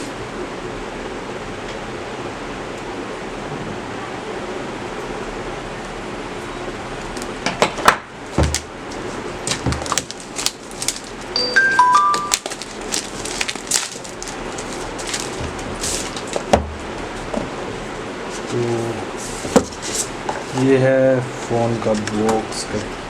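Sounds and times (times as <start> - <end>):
short beeping chime: 11.4 - 12.4
cardboard box being handled: 12.4 - 16.5
steady hiss: 12.4 - 23.0.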